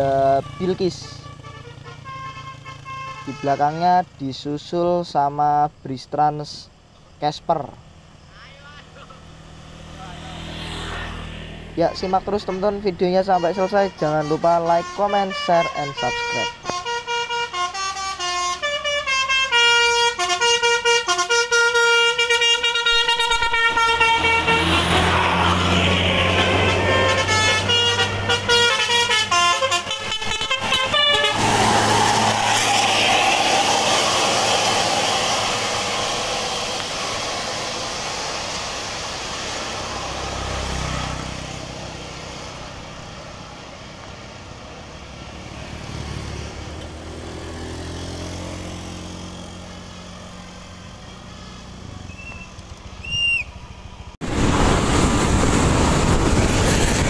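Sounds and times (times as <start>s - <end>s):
bus horn playing a tune: 0.0s - 3.8s, 12.0s - 32.3s
high horn toot: 0.0s - 3.8s, 11.8s - 34.0s
bus engine running: 16.3s - 57.0s
loud rush of noise: 31.2s - 41.0s, 54.2s - 57.0s.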